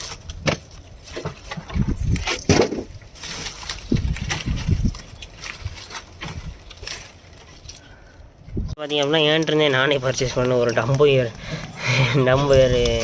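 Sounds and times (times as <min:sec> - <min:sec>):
wind buffeting microphone: 0:01.6 - 0:03.0, 0:03.8 - 0:06.7, 0:08.4 - 0:08.8, 0:10.2 - 0:13.0.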